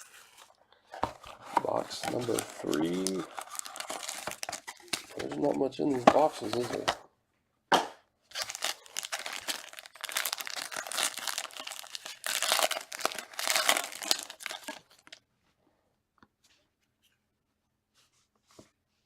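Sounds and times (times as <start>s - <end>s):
plastic wrapping crinkling and tearing: 0.0s - 7.0s, 8.3s - 15.2s.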